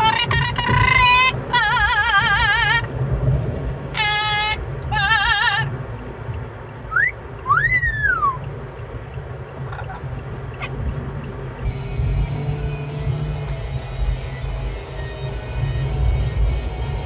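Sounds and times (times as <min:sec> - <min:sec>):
parrot singing wobbling notes: 0:00.0 - 0:02.9, 0:04.0 - 0:05.8
parrot whistles: 0:00.0 - 0:02.9, 0:06.9 - 0:08.4
low rumble of moving car: 0:00.0 - 0:17.0.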